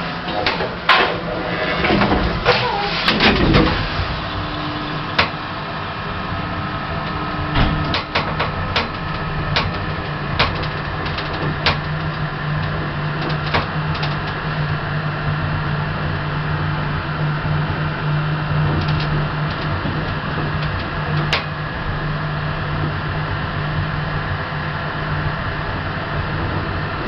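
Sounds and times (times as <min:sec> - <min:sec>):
lift car and doors clicking: 0:00.0 - 0:05.6, 0:07.0 - 0:14.5
hydraulic lift humming: 0:00.0 - 0:27.0.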